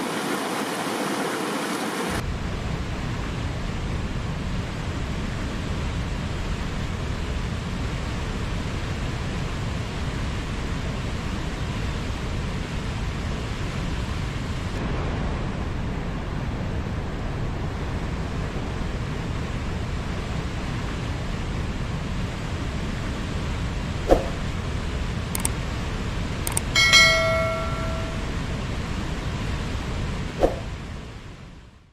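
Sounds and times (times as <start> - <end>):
river water rushing: 0.0 - 2.2, 22.5 - 30.8
sharp clicks: 25.4 - 25.6, 26.5 - 26.8
bell-like metallic ring: 26.5 - 28.5.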